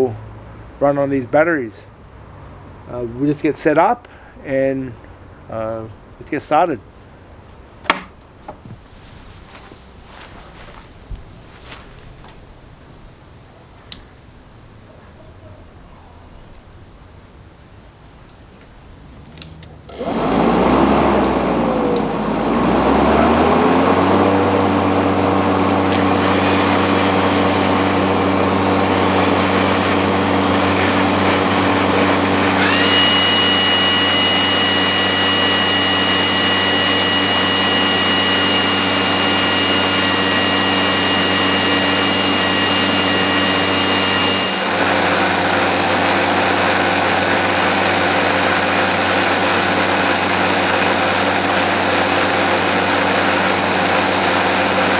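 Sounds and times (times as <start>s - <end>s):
high steady whine: 19.6s - 54.9s
electric motor humming: 19.8s - 54.9s.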